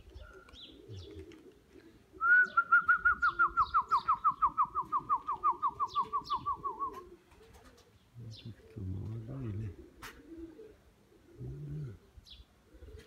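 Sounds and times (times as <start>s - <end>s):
pigeons cooing: 0.0s - 13.0s
person trilled whistling: 2.2s - 7.0s.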